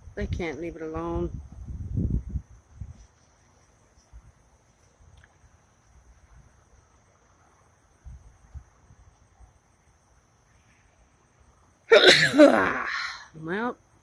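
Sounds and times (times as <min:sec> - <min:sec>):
woman sneezing: 0:11.9 - 0:13.3.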